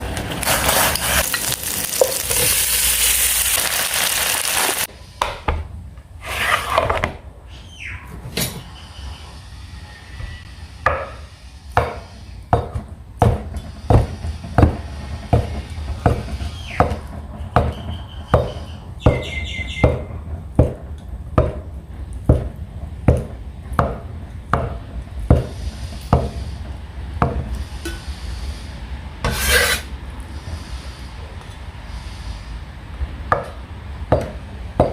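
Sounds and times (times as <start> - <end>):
food sizzling in a pan: 0.5 - 4.9.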